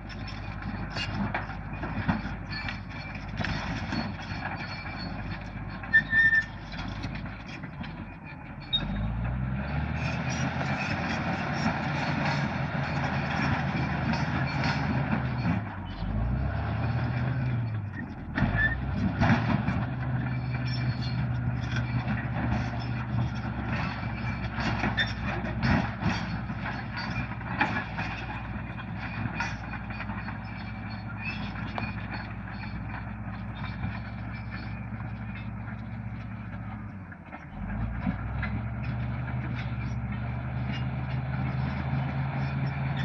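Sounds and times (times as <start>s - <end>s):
clanks and knocks: 0.0s - 8.2s, 17.8s - 43.0s
bulldozer diesel engine running: 0.0s - 43.0s.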